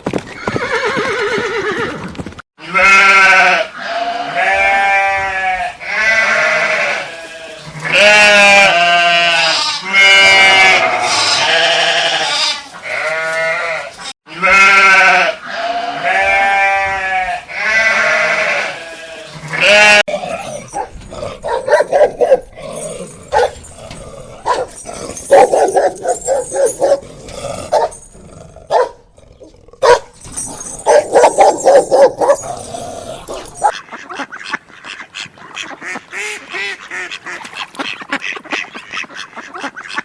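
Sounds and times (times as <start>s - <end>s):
sheep or goat bleating: 2.6s - 21.6s.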